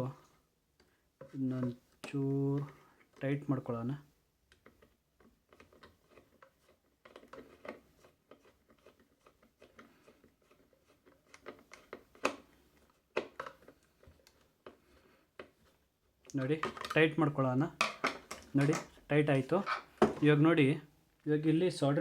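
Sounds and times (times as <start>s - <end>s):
screwdriver scraping: 19.6s - 20.1s.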